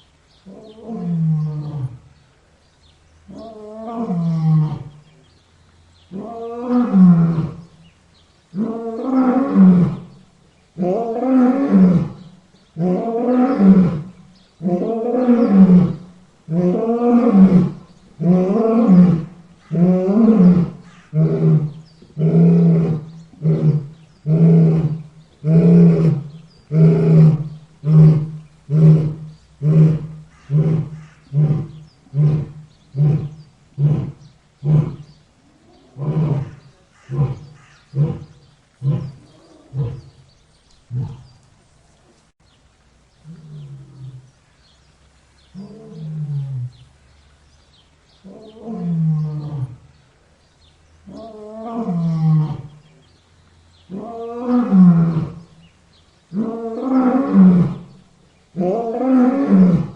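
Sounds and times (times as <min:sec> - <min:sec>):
lion roaring: 0:12.8 - 0:40.2, 0:40.9 - 0:41.4, 0:58.6 - 0:59.9.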